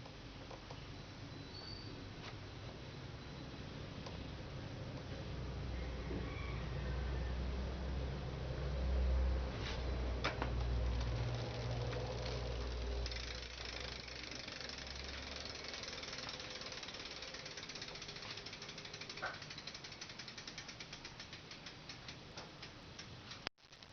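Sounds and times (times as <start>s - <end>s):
bicycle freewheel ticking: 10.2s - 23.5s.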